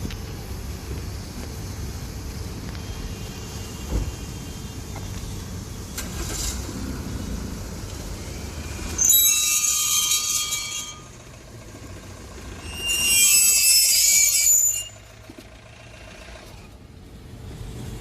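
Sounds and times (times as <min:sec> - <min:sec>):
vehicle rolling with low rumble: 0:00.0 - 0:18.0
brake squealing and scraping: 0:02.5 - 0:16.8.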